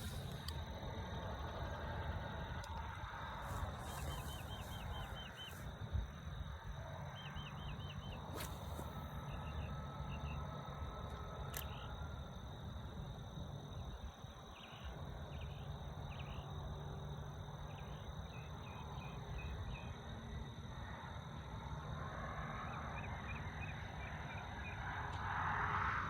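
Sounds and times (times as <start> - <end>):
soft hiss: 8.3 - 9.0.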